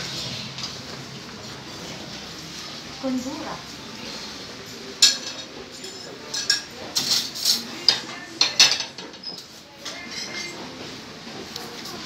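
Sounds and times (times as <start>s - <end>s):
dishes and cutlery clinking: 4.6s - 12.0s.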